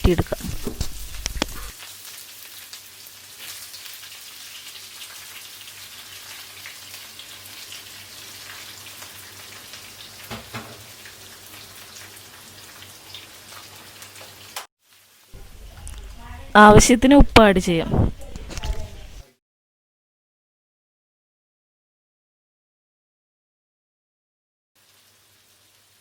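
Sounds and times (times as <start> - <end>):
onions sizzling in oil: 0.7 - 15.5, 24.8 - 26.0.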